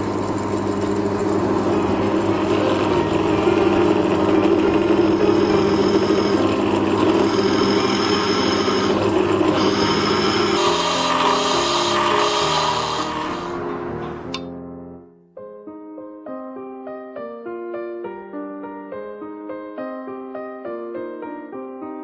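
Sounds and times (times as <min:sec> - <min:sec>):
drill press motor humming: 0:00.0 - 0:14.4.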